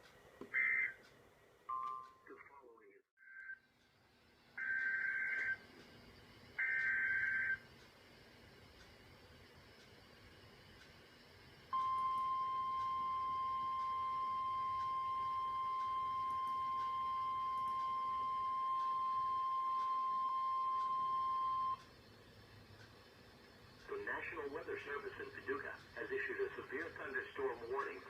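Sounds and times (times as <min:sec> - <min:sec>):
faint radio hiss: 0:00.0 - 0:28.0
loud steady alarm tone: 0:00.5 - 0:01.0, 0:04.6 - 0:05.6, 0:06.6 - 0:07.6, 0:11.7 - 0:21.9.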